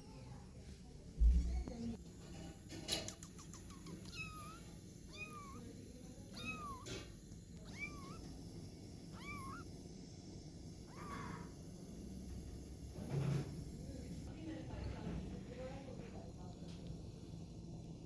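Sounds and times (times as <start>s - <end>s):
kitten mewing: 3.1s - 5.7s, 6.3s - 8.3s, 9.1s - 9.7s, 10.9s - 11.5s.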